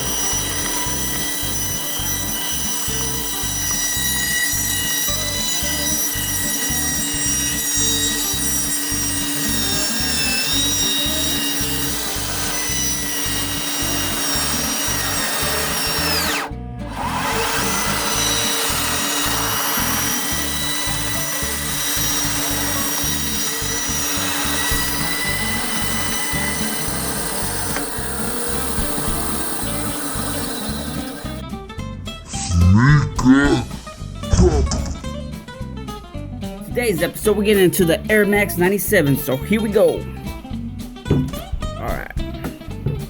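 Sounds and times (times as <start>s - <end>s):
background music with steady beat: 31.3s - 43.0s.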